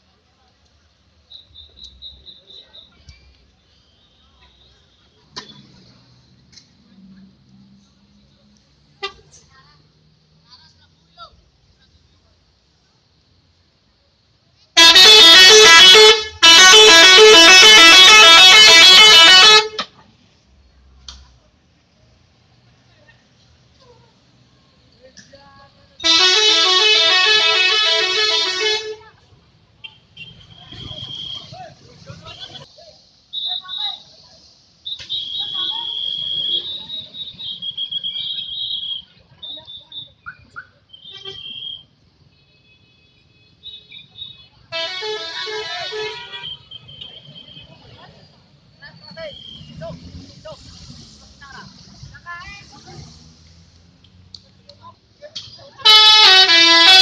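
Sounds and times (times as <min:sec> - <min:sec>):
multi-tone musical bus horn: 0:09.0 - 0:09.3, 0:14.8 - 0:20.0, 0:26.0 - 0:29.1, 0:41.1 - 0:44.0, 0:44.7 - 0:47.8, 0:55.8 - 0:57.0.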